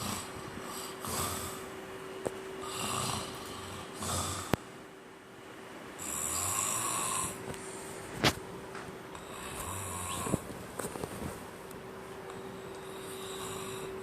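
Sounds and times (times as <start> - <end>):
man snoring: 0.0 - 1.7, 2.6 - 4.6, 6.0 - 7.4, 9.2 - 10.5, 12.9 - 14.0.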